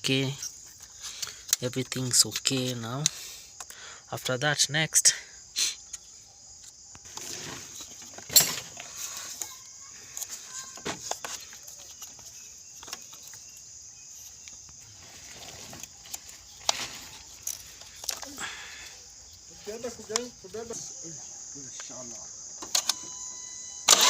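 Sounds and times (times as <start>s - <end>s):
high-pitched background hiss: 0.0s - 24.0s
tools and parts clicking and knocking: 7.7s - 9.5s, 15.8s - 18.3s.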